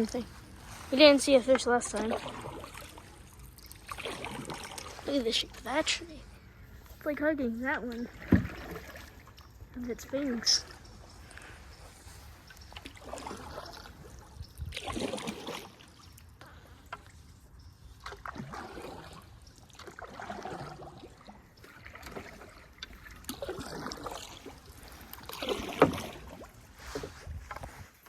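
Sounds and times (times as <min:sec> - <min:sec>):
canoe paddle swishing through water: 0:00.0 - 0:28.0
water trickling off paddle: 0:00.0 - 0:28.0.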